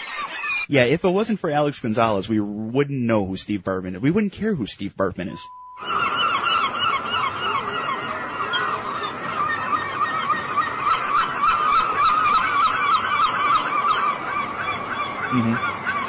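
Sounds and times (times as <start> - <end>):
gulls squawking: 0.0 - 1.2, 5.2 - 16.0.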